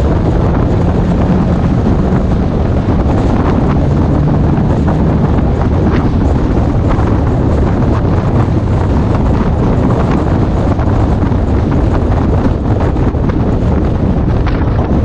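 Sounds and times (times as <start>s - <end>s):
low rumble of moving car: 0.0s - 15.0s
wind buffeting microphone: 0.0s - 15.0s.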